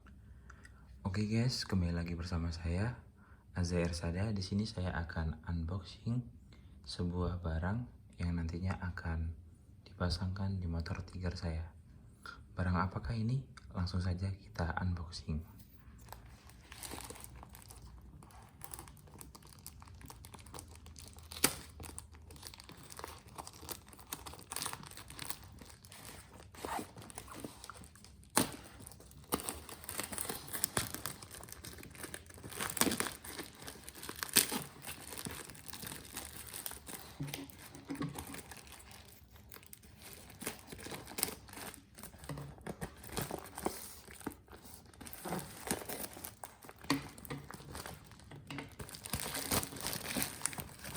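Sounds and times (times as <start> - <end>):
packaging crinkling and tearing: 15.9 - 50.9.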